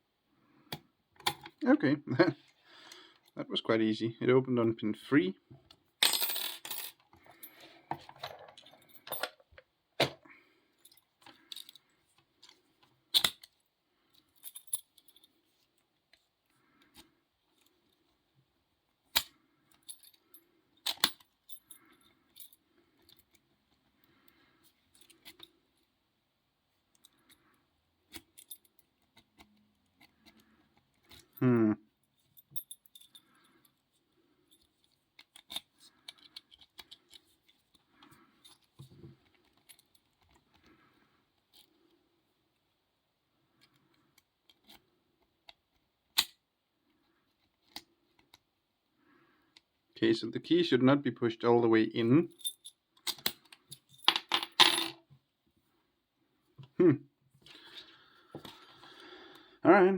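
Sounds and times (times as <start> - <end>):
padlock and keys jingling: 8.2 - 9.5, 28.1 - 31.4, 32.0 - 40.4, 52.3 - 54.9.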